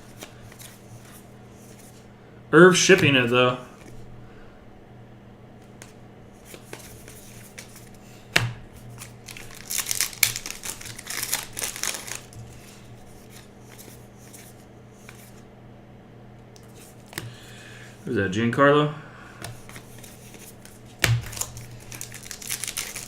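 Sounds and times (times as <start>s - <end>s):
low electrical hum: 0.0s - 23.0s
wrappers tearing and crinkling: 8.9s - 13.5s, 19.9s - 23.0s.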